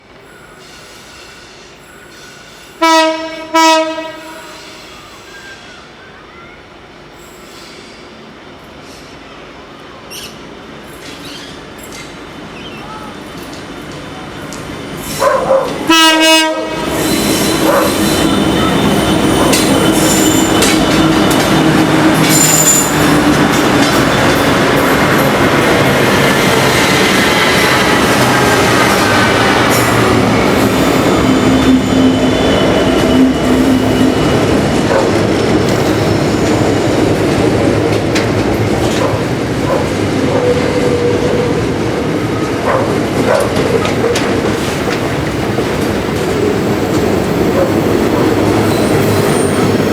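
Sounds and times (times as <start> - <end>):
freight train rumbling: 0.0 - 49.9
train wheel squeals: 0.2 - 2.8, 4.2 - 13.5, 16.8 - 37.2, 43.6 - 49.9
wheels clanking on rail joints: 16.8 - 49.9.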